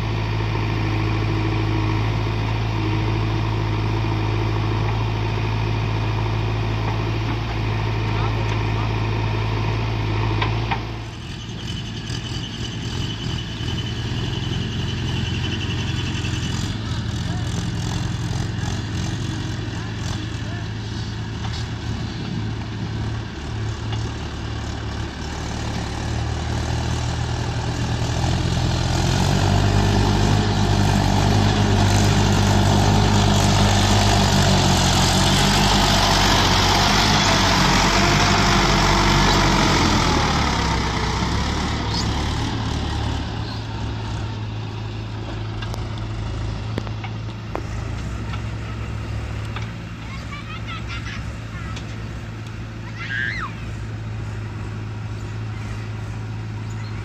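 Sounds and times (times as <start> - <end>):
heavy diesel engine running: 0.0 - 57.0.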